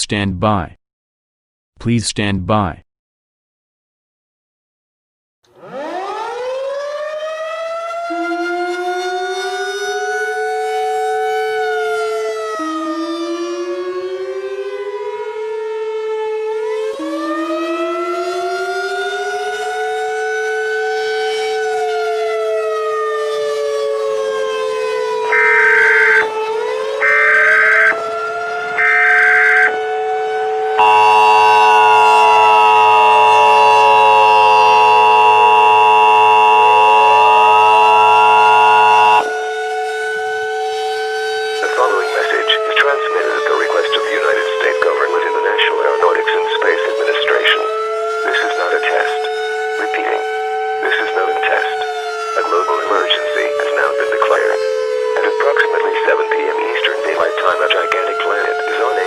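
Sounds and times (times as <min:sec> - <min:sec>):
civil defense siren wailing: 0:05.5 - 0:59.0
second siren tone climbing in steps: 0:05.5 - 0:59.0
emergency alert data tones: 0:24.9 - 0:39.6, 0:41.6 - 0:59.0
steady attention tone: 0:25.3 - 0:26.4, 0:30.6 - 0:39.3.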